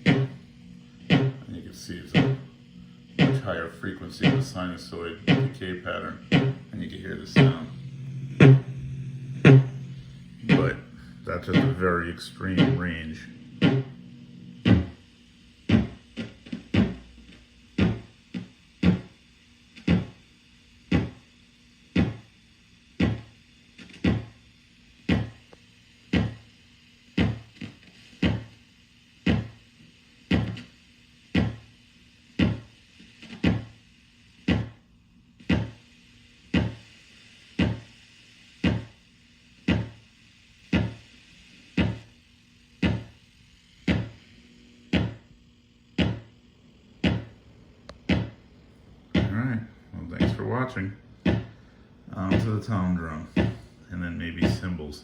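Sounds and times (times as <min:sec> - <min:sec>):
electronic drum thumps: 0:00.0 - 0:19.2, 0:19.8 - 0:20.2, 0:20.9 - 0:21.3, 0:21.9 - 0:22.4, 0:23.0 - 0:24.4, 0:25.0 - 0:26.5, 0:27.1 - 0:28.6, 0:29.2 - 0:29.7, 0:30.3 - 0:31.8, 0:32.4 - 0:33.8, 0:34.4 - 0:34.8, 0:35.4 - 0:35.9, 0:36.5 - 0:38.0, 0:38.6 - 0:39.0, 0:39.6 - 0:40.1, 0:40.7 - 0:42.2, 0:42.8 - 0:43.2, 0:43.8 - 0:44.3, 0:44.9 - 0:45.3, 0:45.9 - 0:46.4, 0:47.0 - 0:48.5, 0:49.1 - 0:53.8, 0:54.4 - 0:54.8.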